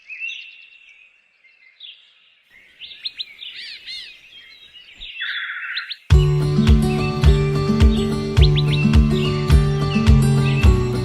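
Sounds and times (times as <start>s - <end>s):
birds chirping: 0.0s - 11.0s
buzzy bird trill: 2.6s - 11.0s.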